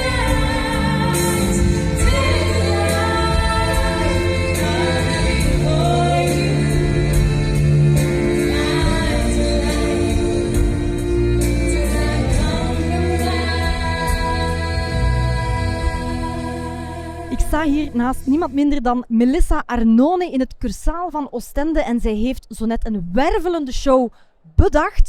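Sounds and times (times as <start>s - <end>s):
gospel song with choir and band: 0.0s - 18.5s.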